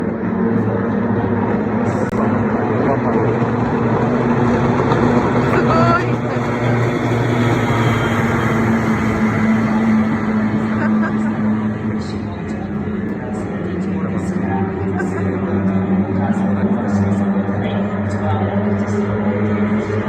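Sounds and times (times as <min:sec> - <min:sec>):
motorboat engines droning: 0:00.0 - 0:20.0
voices: 0:05.4 - 0:20.0.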